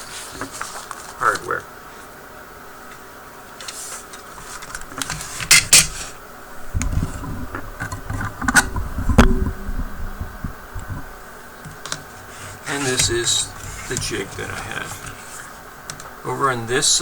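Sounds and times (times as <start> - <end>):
low rumbling: 6.6 - 11.6.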